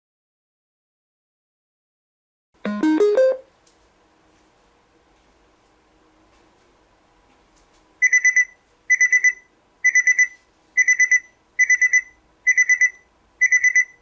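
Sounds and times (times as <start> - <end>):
alarm clock beeping: 8.0 - 14.0.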